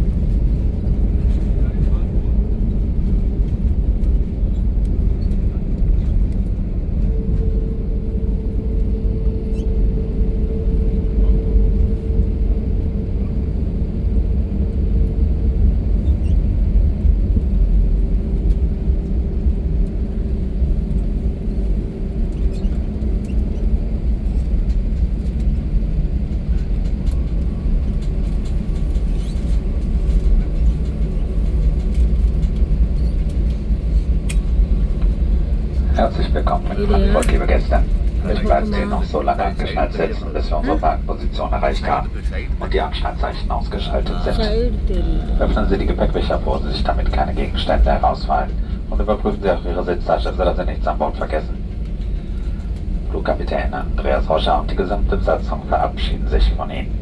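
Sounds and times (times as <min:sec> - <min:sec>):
airliner cabin rumble: 0:00.0 - 0:57.0
faint steady whine: 0:35.2 - 0:56.9.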